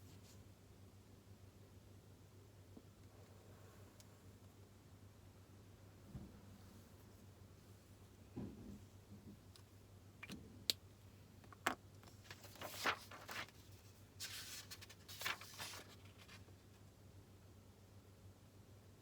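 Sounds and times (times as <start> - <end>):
paper rustling: 12.0 - 16.6.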